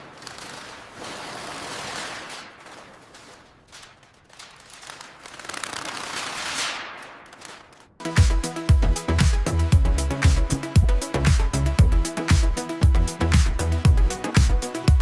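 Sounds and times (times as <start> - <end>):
crackling of rapid clicks: 0.0 - 8.3.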